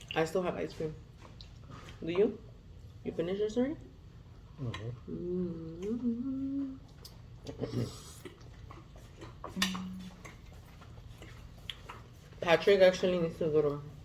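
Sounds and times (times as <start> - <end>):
person humming while eating: 4.6 - 8.2, 9.5 - 10.2.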